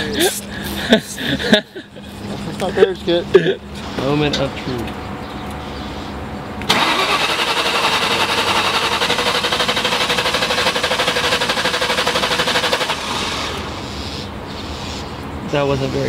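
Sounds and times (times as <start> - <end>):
engine cranking on starter motor: 6.7 - 13.8.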